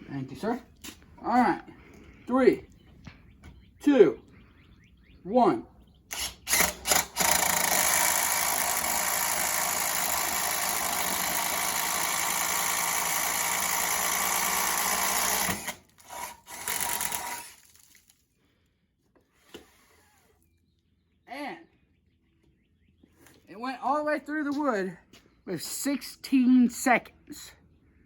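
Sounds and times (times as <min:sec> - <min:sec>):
drill boring through wood: 0:06.1 - 0:17.8, 0:19.5 - 0:20.4.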